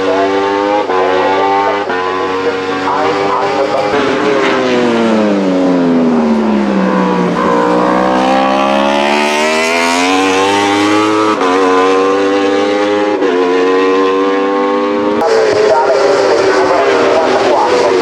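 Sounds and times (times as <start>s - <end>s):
motorcycle engine revving: 0.0s - 18.0s.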